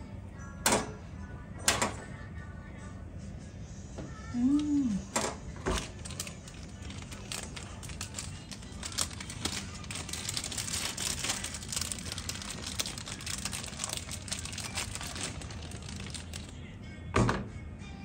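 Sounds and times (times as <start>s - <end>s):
packaging crinkling: 5.7s - 16.6s.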